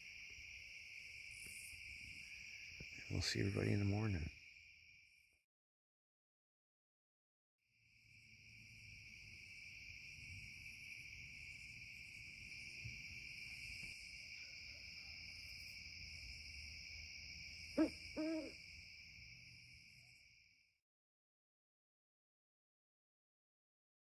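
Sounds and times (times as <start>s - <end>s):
crickets trilling: 0.0s - 5.4s, 7.8s - 20.6s
owl hooting: 17.7s - 18.6s.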